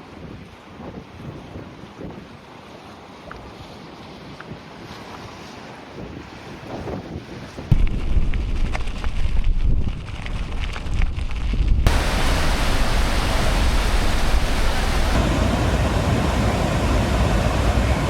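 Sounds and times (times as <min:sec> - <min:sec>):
wind rumbling on microphone: 0:06.0 - 0:18.0
waterfall rushing: 0:11.9 - 0:18.0.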